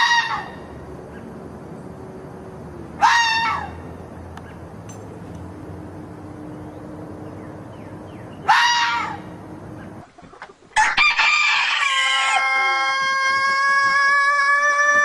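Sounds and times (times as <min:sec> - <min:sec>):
rooster crowing: 0:00.0 - 0:00.7, 0:03.0 - 0:03.8, 0:08.4 - 0:09.3, 0:10.8 - 0:15.0.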